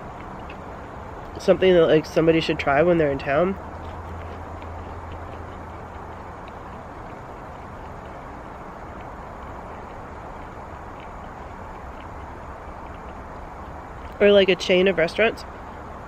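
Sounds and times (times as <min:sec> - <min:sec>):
low hiss and rumble: 0:00.0 - 0:16.0
faint ticks: 0:03.6 - 0:14.2.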